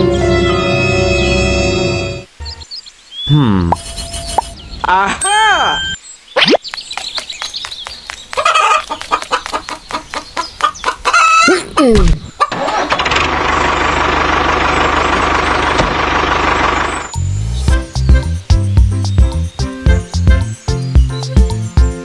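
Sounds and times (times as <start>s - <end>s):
chicken clucking: 8.3s - 12.9s
small engine running: 13.0s - 17.2s.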